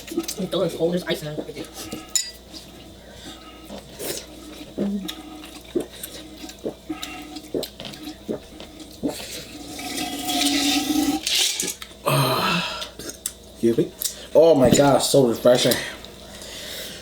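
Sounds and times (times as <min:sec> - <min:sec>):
person gulping a drink: 0:03.7 - 0:13.2.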